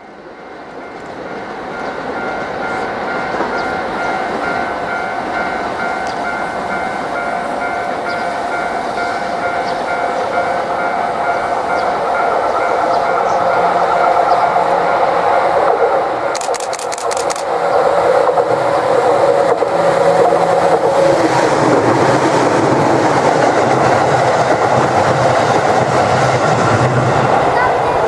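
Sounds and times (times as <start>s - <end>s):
level crossing warning bell: 0.0s - 16.2s
electric train running: 0.0s - 28.0s.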